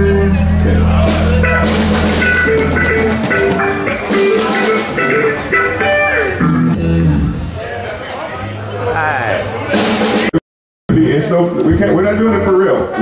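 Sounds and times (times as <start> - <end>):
held bass note: 0.0 - 7.4
short guitar or keyboard notes: 0.0 - 7.6.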